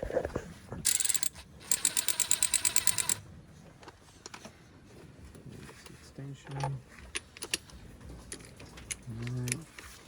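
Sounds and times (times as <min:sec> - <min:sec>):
ratchet wrench clicking: 0:00.9 - 0:03.2.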